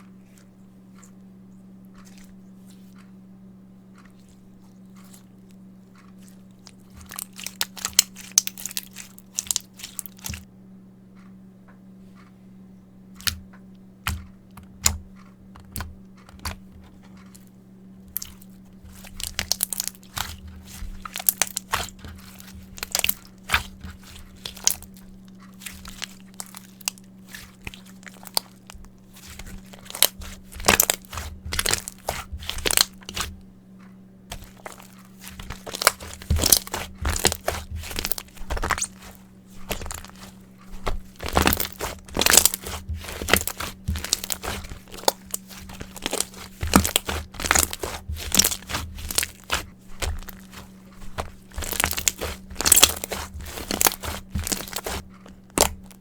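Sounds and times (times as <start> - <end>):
slime crackling and popping: 6.7 - 10.4, 18.1 - 33.3, 34.3 - 56.0.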